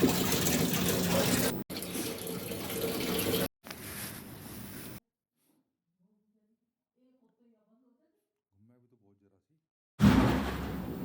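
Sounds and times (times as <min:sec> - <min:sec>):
water rushing into washing machine: 0:00.0 - 0:03.5, 0:10.0 - 0:11.0.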